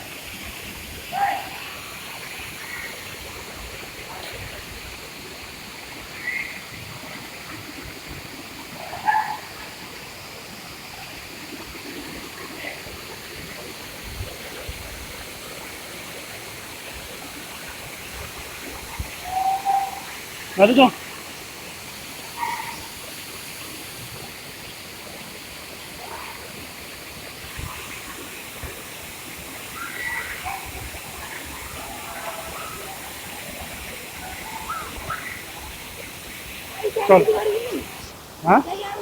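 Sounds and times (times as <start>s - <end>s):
flowing water: 0.0s - 39.0s.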